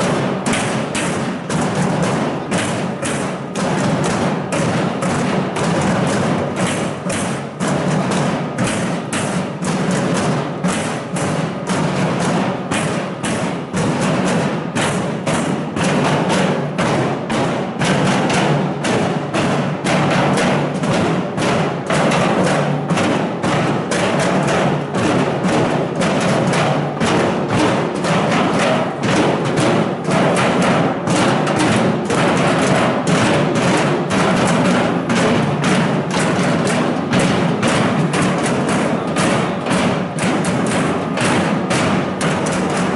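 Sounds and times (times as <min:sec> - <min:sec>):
crowd drumming and banging: 0:00.0 - 0:42.9.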